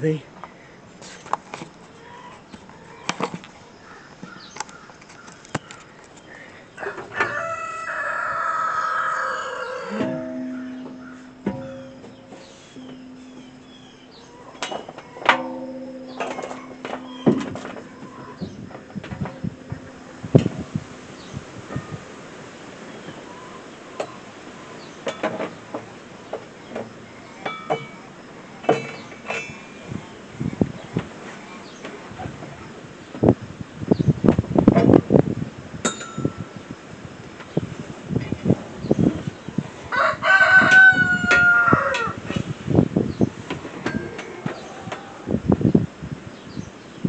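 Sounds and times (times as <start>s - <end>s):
metallic clinks and knocks: 9.9s - 22.1s, 27.4s - 30.1s.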